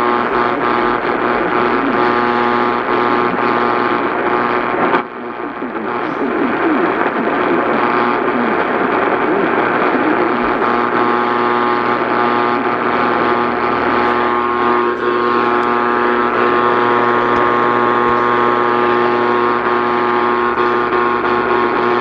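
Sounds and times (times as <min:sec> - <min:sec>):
buzzy electronic alert tone: 0:10.6 - 0:22.0.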